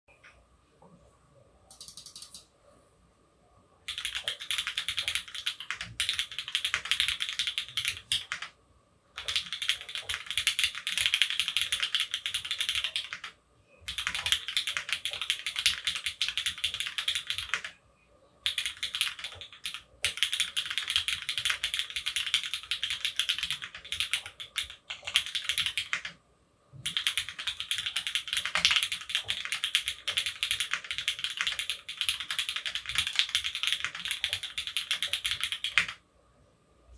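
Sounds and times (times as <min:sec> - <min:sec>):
mechanical keyboard typing: 0:01.7 - 0:02.5, 0:03.8 - 0:08.6, 0:09.2 - 0:17.8, 0:18.4 - 0:26.2, 0:26.8 - 0:36.0.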